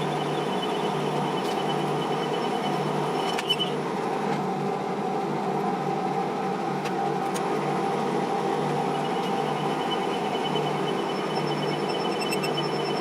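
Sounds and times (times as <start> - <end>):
faint high pulsing tone: 0.0 - 3.8, 8.8 - 13.0
metal lathe running: 0.0 - 13.0.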